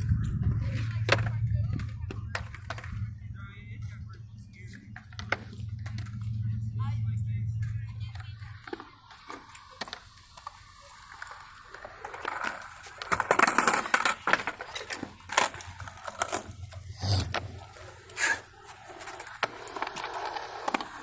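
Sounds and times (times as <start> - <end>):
skateboard wheels rolling and scraping: 0.0 - 6.6, 8.2 - 21.0
skateboard clacks and knocks: 0.4 - 3.1, 8.2 - 16.6, 17.2 - 21.0.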